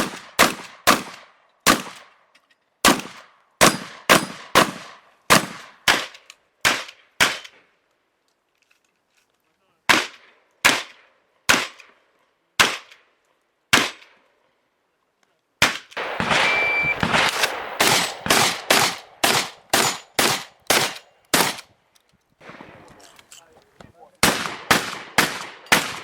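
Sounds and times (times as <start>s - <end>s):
shotgun shots: 16.0s - 21.6s, 22.4s - 23.6s, 24.2s - 26.0s.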